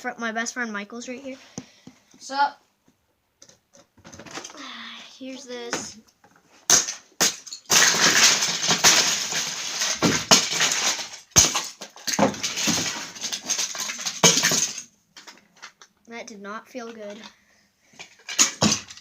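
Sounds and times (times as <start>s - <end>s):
plastic bricks clattering: 3.4s - 4.6s, 6.7s - 15.9s, 18.0s - 19.0s.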